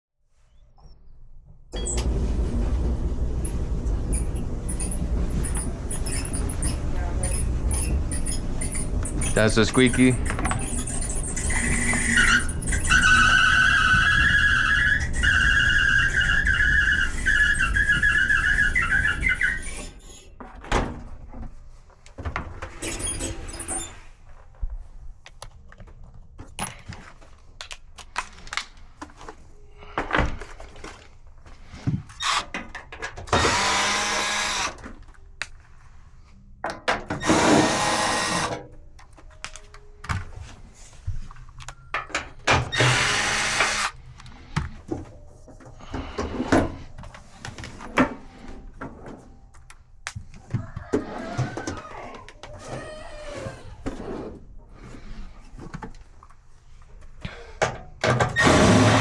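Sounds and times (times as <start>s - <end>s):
power drill running: 1.8s - 20.2s, 33.3s - 34.8s, 37.2s - 38.6s, 42.7s - 44.0s, 58.4s - 59.0s
dryer pulley screeching: 1.8s - 20.4s, 22.7s - 24.1s, 33.2s - 34.8s, 37.1s - 38.6s, 42.5s - 44.0s, 50.5s - 54.4s, 58.3s - 59.0s.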